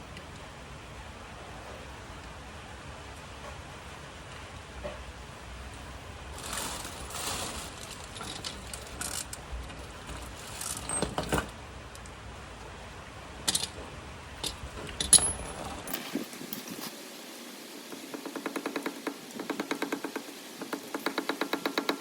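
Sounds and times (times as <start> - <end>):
metal tools clinking and knocking: 7.2 - 11.5, 13.5 - 13.8, 14.4 - 16.0.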